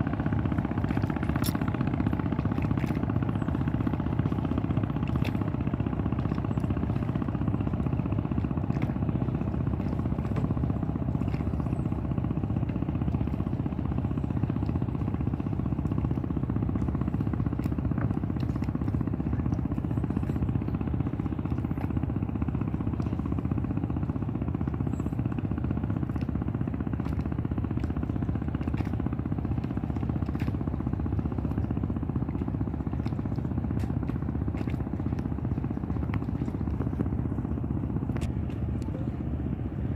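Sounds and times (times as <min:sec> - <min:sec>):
boat engine chugging: 0:00.0 - 0:39.9.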